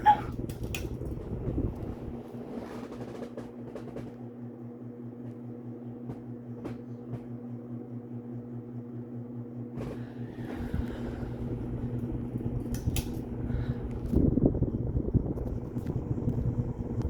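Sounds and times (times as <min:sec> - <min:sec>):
ceiling fan motor hum: 0:00.0 - 0:17.0.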